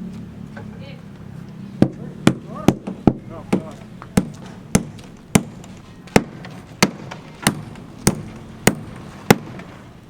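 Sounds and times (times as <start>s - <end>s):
hammer strikes: 1.8s - 9.8s.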